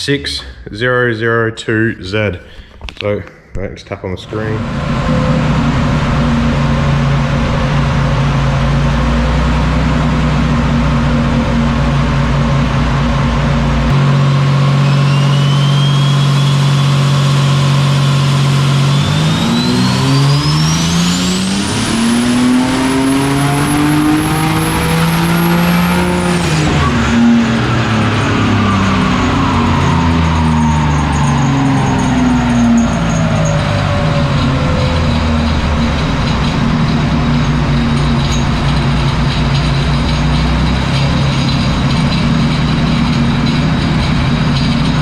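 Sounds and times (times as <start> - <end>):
car engine revving under load: 2.4 - 45.0
turbo whistle: 14.6 - 22.2.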